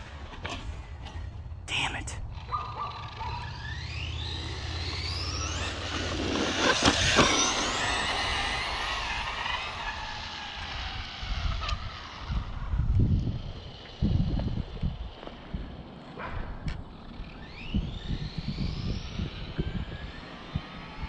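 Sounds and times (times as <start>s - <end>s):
electric motor whining: 2.3s - 16.0s, 16.8s - 21.0s
wind buffeting microphone: 4.5s - 21.0s.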